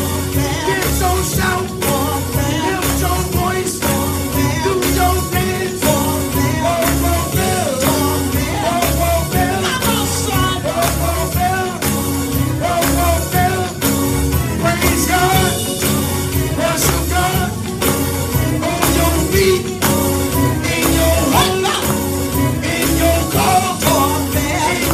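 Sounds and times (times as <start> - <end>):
praise music with singing: 0.0 - 24.9
steady drum beat: 0.0 - 24.9
strong bass: 0.0 - 24.9.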